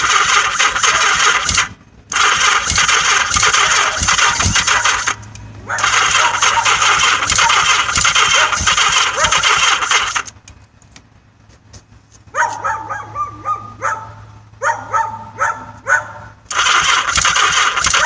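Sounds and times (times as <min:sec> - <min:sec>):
engine cranking on starter: 0:00.0 - 0:10.5, 0:16.5 - 0:18.0
dog barking: 0:05.7 - 0:09.5, 0:12.3 - 0:16.4.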